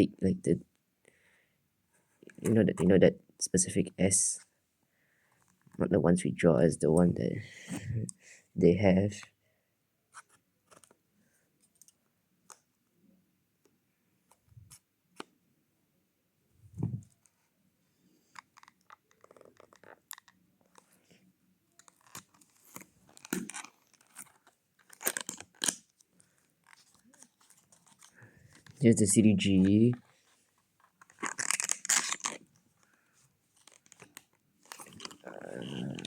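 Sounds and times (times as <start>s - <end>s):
cardboard and plastic packaging handled: 18.3s - 36.0s.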